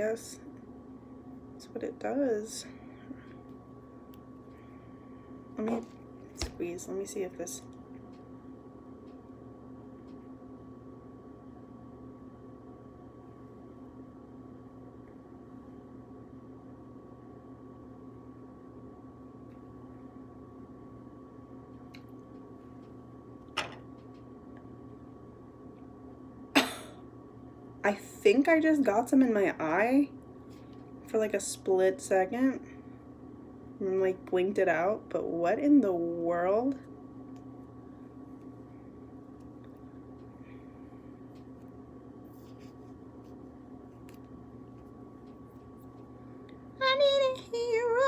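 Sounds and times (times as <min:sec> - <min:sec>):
electrical hum: 0:00.0 - 0:48.0.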